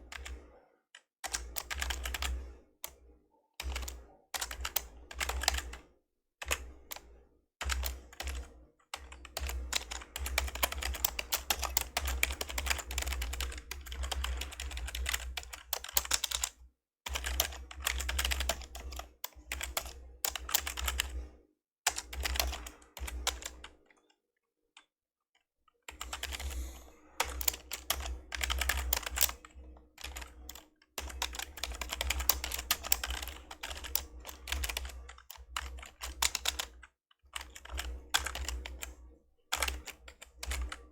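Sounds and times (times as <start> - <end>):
keyboard typing soft clacks: 27.2 - 40.8.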